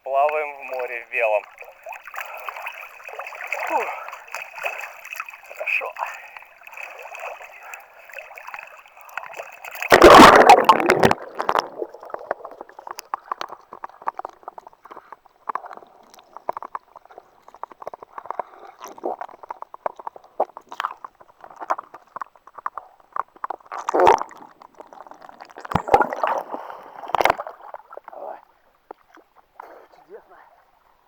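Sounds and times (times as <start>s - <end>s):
water gurgling: 0.0s - 14.8s, 23.7s - 28.1s
water sloshing around swimmer: 0.2s - 19.4s
clicks in water: 0.2s - 28.2s
loud splash: 9.2s - 12.7s.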